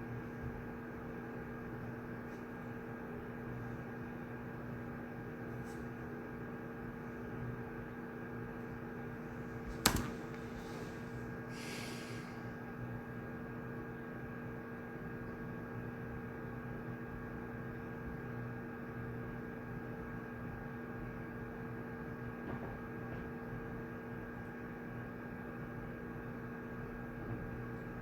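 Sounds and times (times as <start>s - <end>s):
room hum: 0.0s - 19.0s.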